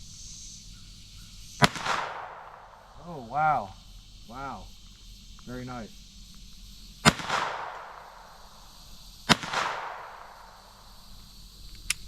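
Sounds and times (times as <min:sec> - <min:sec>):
pistol shots echoing: 0:01.6 - 0:03.0, 0:07.0 - 0:08.6, 0:09.3 - 0:10.8.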